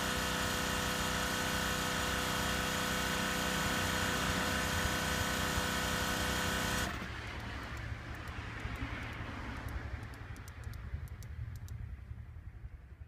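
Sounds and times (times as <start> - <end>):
air compressor running: 0.0 - 7.1
light clicks: 7.4 - 11.8.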